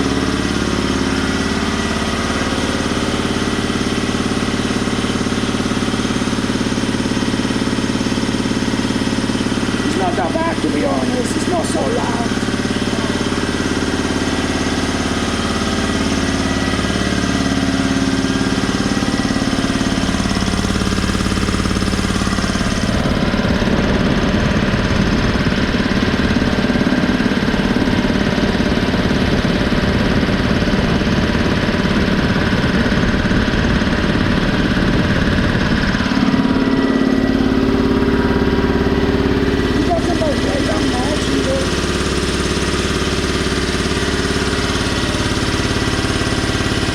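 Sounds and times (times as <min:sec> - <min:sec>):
electric air compressor running: 0:00.0 - 0:46.9.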